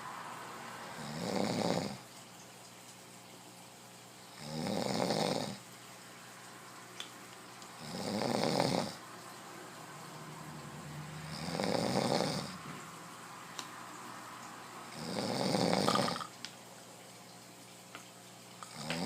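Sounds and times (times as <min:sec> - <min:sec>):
man snoring: 0:01.0 - 0:02.0, 0:04.4 - 0:05.6, 0:07.8 - 0:09.0, 0:11.2 - 0:12.6, 0:14.9 - 0:16.3, 0:18.7 - 0:19.0.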